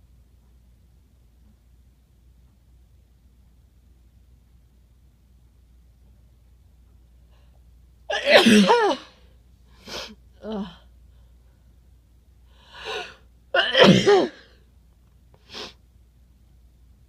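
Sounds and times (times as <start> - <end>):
person sneezing: 8.1 - 9.2, 12.8 - 14.5.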